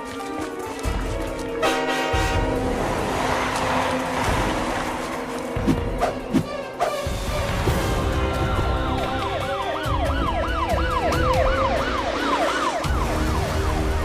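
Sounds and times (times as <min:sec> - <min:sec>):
background music: 0:00.0 - 0:14.0
siren yelping: 0:09.5 - 0:14.0.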